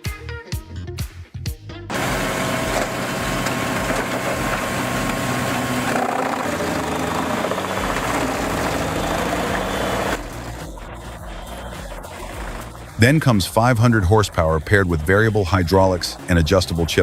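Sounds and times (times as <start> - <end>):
wood chipper shredding: 1.9 - 10.2
wood chipper engine drone: 1.9 - 10.6.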